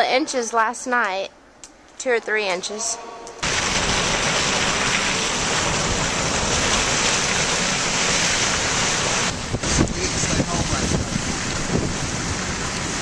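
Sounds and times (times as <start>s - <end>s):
wind blowing across microphone: 3.4s - 13.0s.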